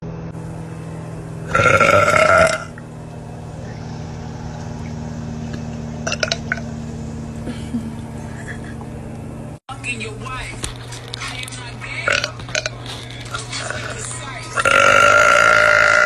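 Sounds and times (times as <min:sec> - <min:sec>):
steady low hum: 0:00.0 - 0:16.0
woman burping: 0:12.1 - 0:12.7, 0:14.6 - 0:16.0.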